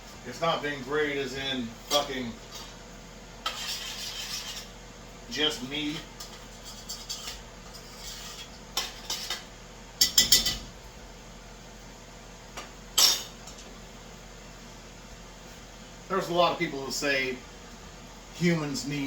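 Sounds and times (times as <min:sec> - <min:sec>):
metal cookware clattering: 0:06.2 - 0:10.7, 0:13.0 - 0:13.7.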